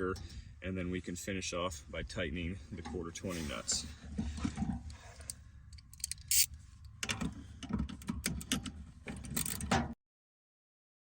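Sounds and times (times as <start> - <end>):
hand ratchet clicking: 5.8 - 6.5.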